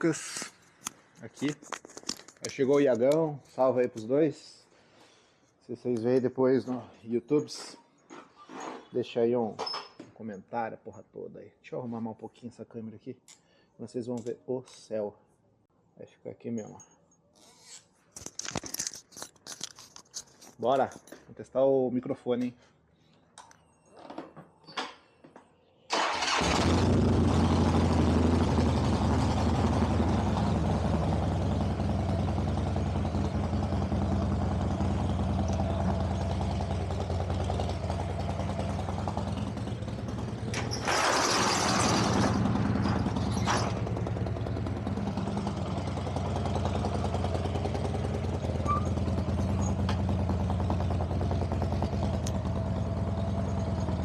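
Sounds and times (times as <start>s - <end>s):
motorcycle engine starting and idling: 25.9s - 54.0s.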